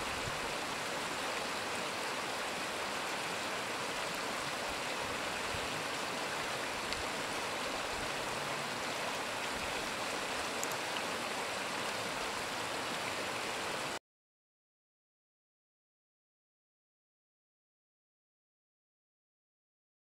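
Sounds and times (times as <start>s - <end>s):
snowstorm hiss: 0.0s - 14.0s
faint ticks: 6.8s - 7.2s, 10.3s - 11.1s.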